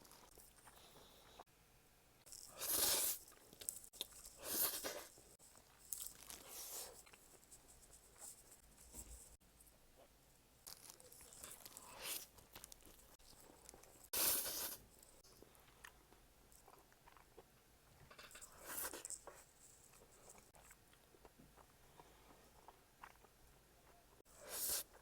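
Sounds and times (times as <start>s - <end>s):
crunchy chewing of crisp food: 0.0s - 1.4s, 2.3s - 9.2s, 10.0s - 25.0s.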